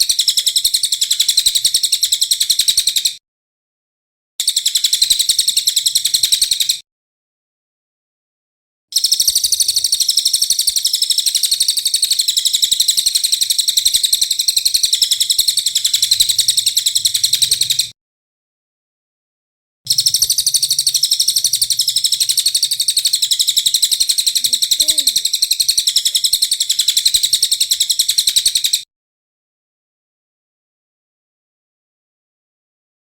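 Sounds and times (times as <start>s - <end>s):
harsh high bird chips: 21.2s - 26.5s.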